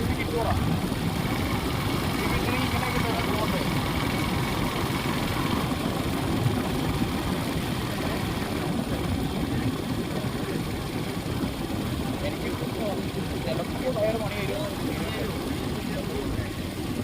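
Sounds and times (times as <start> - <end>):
vehicle engine and road rumble: 0.0 - 17.0.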